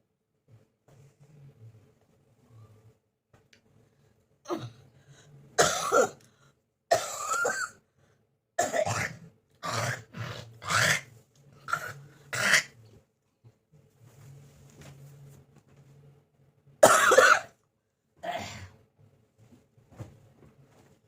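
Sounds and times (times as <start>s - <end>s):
person coughing hard: 5.6s - 6.2s, 6.9s - 7.8s, 8.6s - 11.1s, 11.7s - 12.8s, 16.8s - 17.6s.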